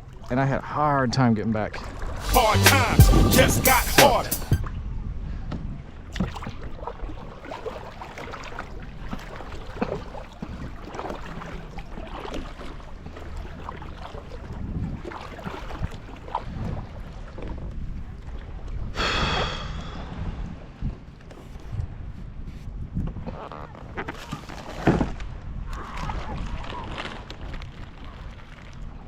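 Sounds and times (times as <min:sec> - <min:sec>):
paddle splashing water: 0:01.6 - 0:04.2, 0:06.0 - 0:29.0
loud pitched call: 0:02.2 - 0:04.6
wind rumble on microphone: 0:04.6 - 0:07.2, 0:14.4 - 0:29.0.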